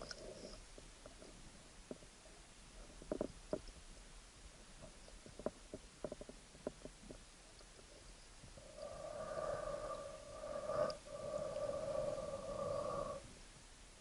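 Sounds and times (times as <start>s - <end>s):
steady hollow hum: 0.0s - 14.0s
underwater clicks and knocks: 2.8s - 3.8s, 4.8s - 7.2s.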